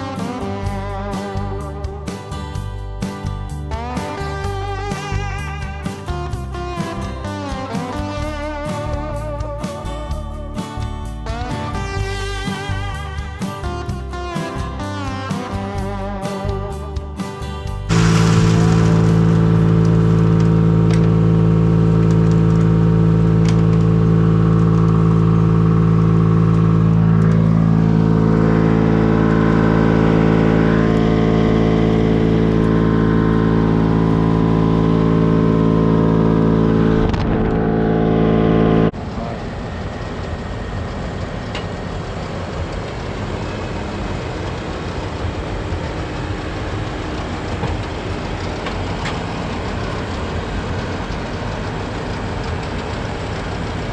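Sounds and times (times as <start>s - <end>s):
rough machine rumble: 0.0s - 53.9s
machinery engine running: 17.1s - 53.9s.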